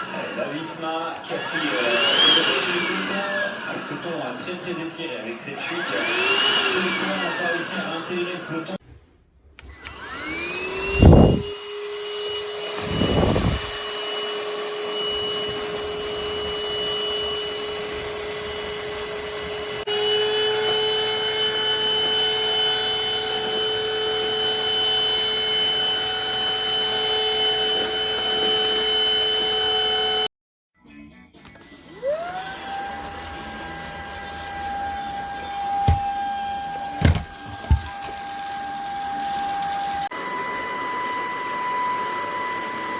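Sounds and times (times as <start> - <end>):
vacuum motor whine: 0.0 - 8.8, 9.6 - 30.3, 32.0 - 42.9
thumps: 35.7 - 39.8.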